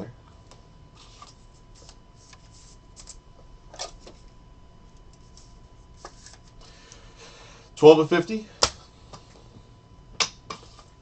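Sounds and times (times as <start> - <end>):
cards rustling and sliding into sleeves: 1.0 - 3.2, 5.1 - 6.6.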